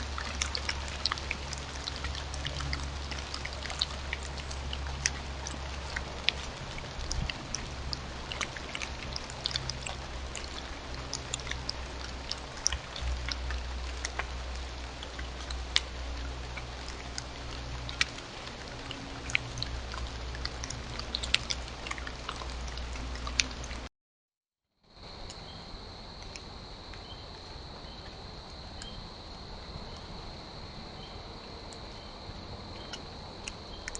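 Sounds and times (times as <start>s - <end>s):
low steady hum: 0.0s - 23.9s, 24.9s - 33.9s
raindrops ticking: 0.0s - 23.9s.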